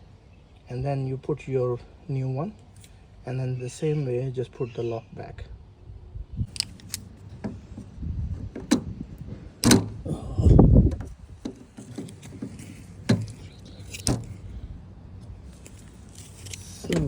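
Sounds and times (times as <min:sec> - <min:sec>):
door handle lock clicking: 0:09.6 - 0:10.0.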